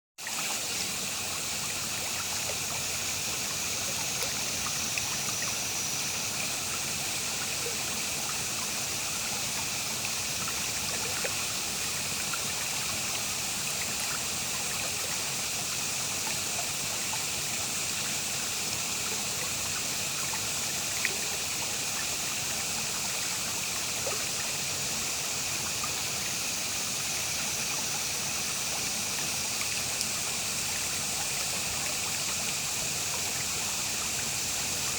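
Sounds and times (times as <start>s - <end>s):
water trickling over rocks: 0.2s - 34.9s.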